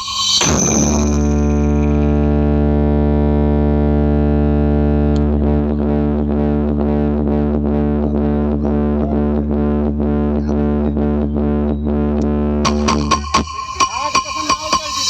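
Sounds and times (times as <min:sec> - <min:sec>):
distorted electronic music: 0:00.0 - 0:15.0.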